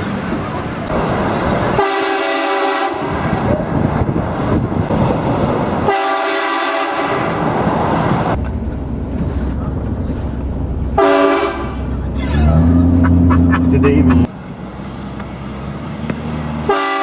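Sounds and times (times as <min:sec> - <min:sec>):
train horn blasting: 0:01.8 - 0:03.2, 0:05.9 - 0:07.3, 0:11.0 - 0:11.8, 0:16.7 - 0:17.0.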